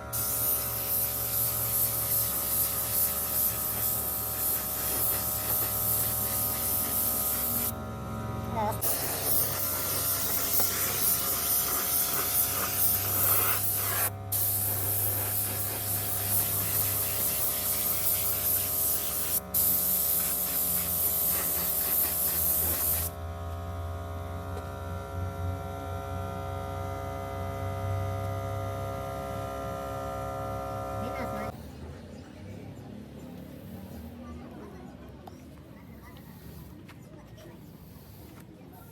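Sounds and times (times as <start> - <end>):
compressed air hissing from tool: 0.1 - 7.8, 8.8 - 23.2.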